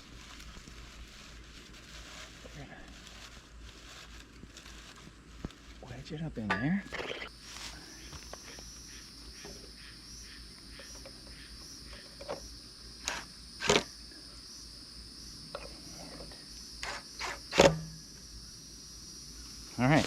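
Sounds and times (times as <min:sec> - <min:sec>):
rustles and knocks of nest: 0:00.0 - 0:10.0
high insect chorus: 0:00.0 - 0:20.0.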